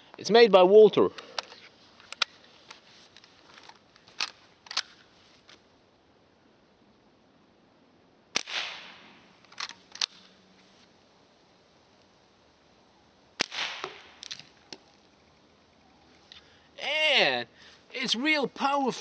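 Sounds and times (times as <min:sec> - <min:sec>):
rifle lever metallic clicks: 0:03.6 - 0:05.0, 0:09.4 - 0:10.3
air rifle shot: 0:08.4 - 0:09.2, 0:13.4 - 0:14.3.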